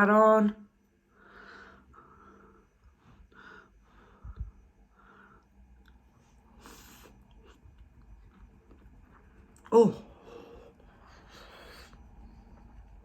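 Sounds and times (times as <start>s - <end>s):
faint chewing: 5.8s - 9.8s.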